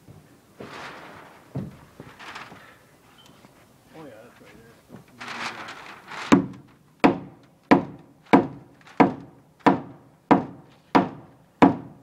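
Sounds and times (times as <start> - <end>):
hammer striking wood: 6.3 - 12.0.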